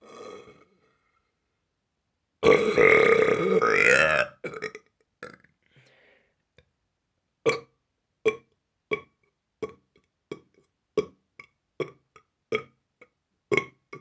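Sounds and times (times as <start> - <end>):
man burping: 2.4 - 5.4.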